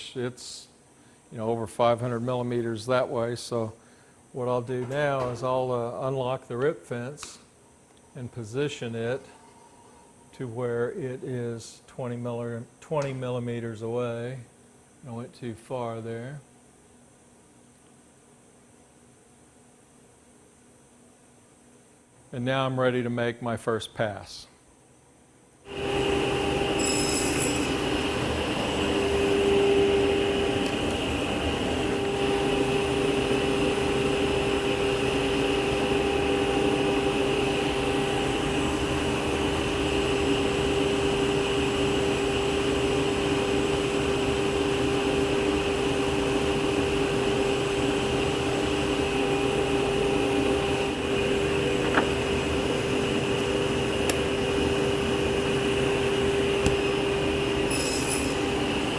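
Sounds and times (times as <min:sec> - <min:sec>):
table saw whining: 0:25.7 - 0:41.1, 0:45.1 - 0:58.9.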